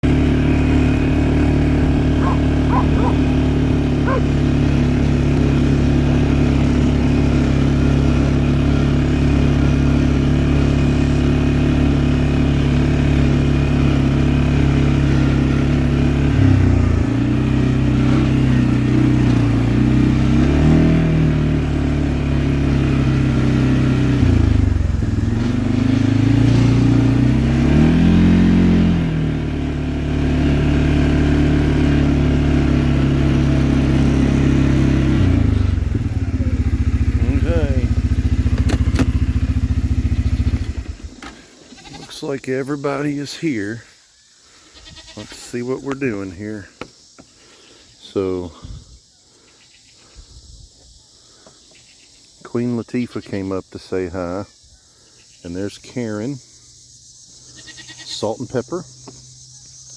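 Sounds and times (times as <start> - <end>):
vehicle engine running: 0.0 - 43.8.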